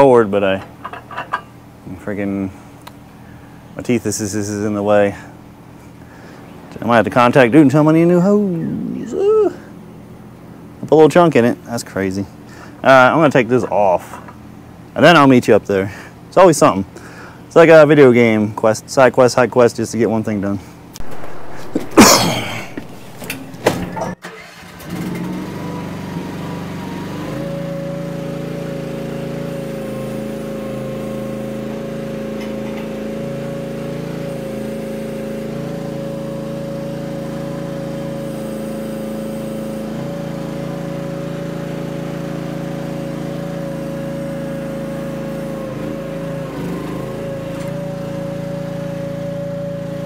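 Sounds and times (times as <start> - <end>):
high whine: 8.2 - 9.5, 20.9 - 24.2
excavator engine running: 21.0 - 25.2.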